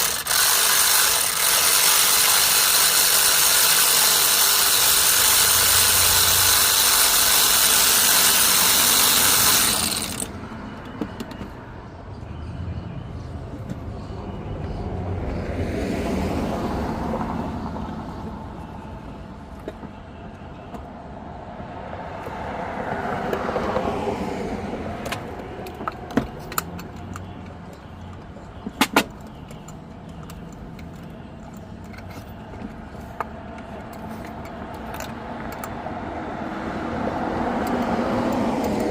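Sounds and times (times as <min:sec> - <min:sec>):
cars passing by: 0:00.0 - 0:38.9
metallic clicks of hand tools: 0:37.6 - 0:38.9.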